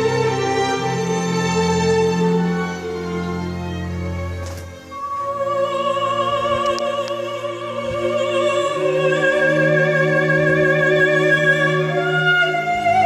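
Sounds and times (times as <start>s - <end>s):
orchestra strings: 0.0s - 13.0s
operatic soprano singing: 4.9s - 13.0s.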